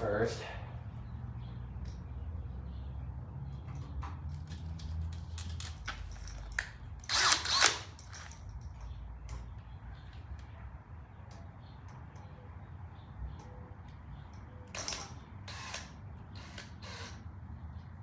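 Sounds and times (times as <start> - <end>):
cordless drill driving screw: 7.0 - 8.3, 14.7 - 17.2.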